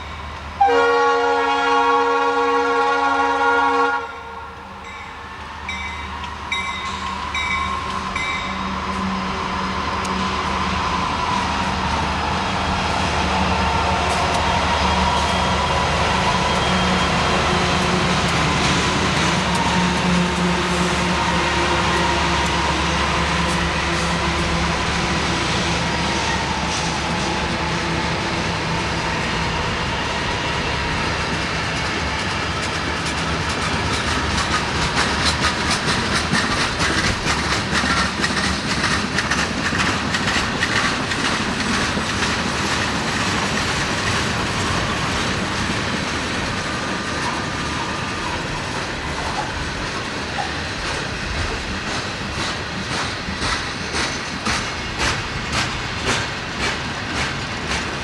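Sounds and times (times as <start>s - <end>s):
diesel locomotive hum: 0.0s - 58.0s
train wheels clicking over rail joints: 30.8s - 58.0s.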